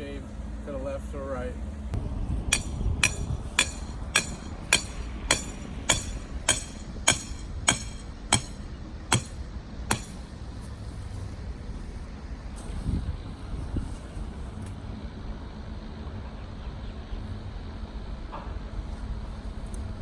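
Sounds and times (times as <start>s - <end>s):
hammer blows on stake: 2.0s - 10.3s.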